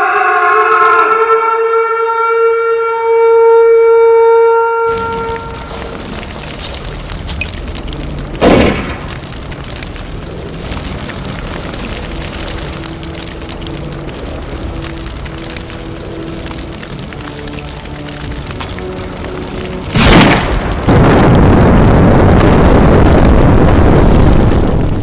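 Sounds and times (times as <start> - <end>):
horn blast: 0.0 - 6.0
continuous low rumble: 4.9 - 25.0.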